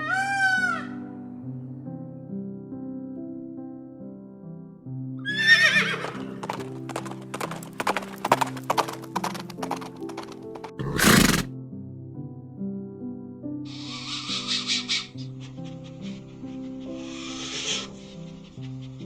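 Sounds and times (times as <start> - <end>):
hooves clopping: 6.1 - 11.5
horse whinnying: 10.8 - 11.5.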